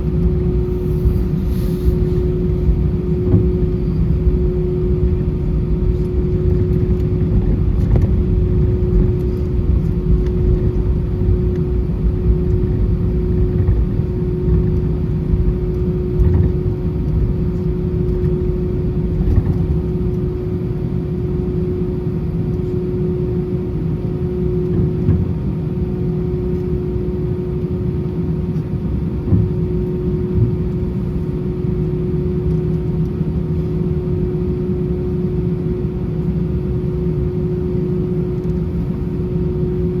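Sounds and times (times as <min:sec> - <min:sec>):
jet engines running: 0:00.0 - 0:22.8.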